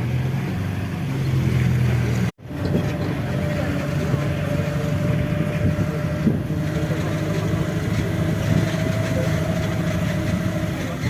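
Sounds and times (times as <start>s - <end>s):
bus engine droning: 0.0s - 11.0s.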